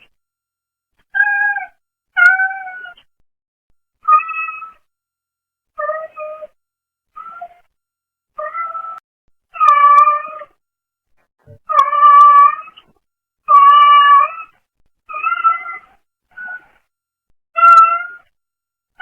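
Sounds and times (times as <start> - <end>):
cat meowing: 13.5 - 14.5, 15.1 - 16.7, 17.6 - 18.3.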